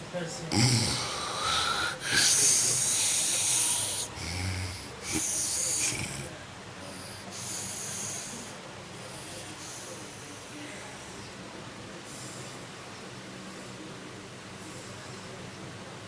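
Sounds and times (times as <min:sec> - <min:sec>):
man snoring: 0:00.5 - 0:10.3.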